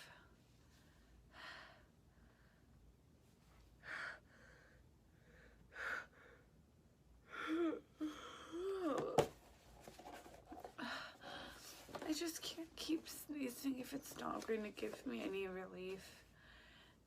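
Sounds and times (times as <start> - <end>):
woman gasping breaths: 3.8 - 6.6, 7.2 - 9.0, 10.7 - 12.0, 16.3 - 17.0.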